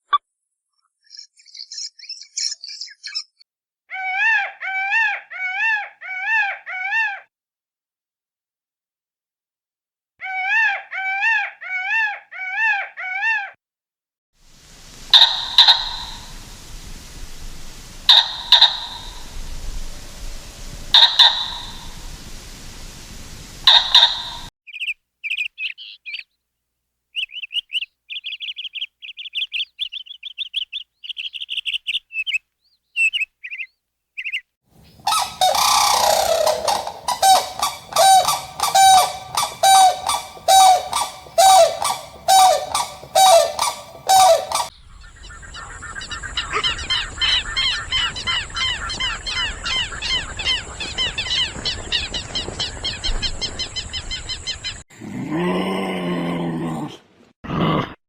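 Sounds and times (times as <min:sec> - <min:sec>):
overlapping bird chirps: 0:01.0 - 0:03.4, 0:15.0 - 0:16.6, 0:17.7 - 0:19.5, 0:20.9 - 0:22.0, 0:23.6 - 0:26.4, 0:27.1 - 0:54.8
thin high bird chirps: 0:01.0 - 0:03.4, 0:15.1 - 0:16.6, 0:18.1 - 0:19.4, 0:20.9 - 0:22.0, 0:23.6 - 0:26.3, 0:27.2 - 0:44.7
loud repeated bird calls: 0:03.9 - 0:07.3, 0:15.0 - 0:16.7, 0:18.0 - 0:19.4, 0:20.9 - 0:22.0, 0:23.6 - 0:26.3, 0:27.2 - 0:54.8
steady high hiss: 0:14.4 - 0:24.5, 0:34.8 - 0:44.7.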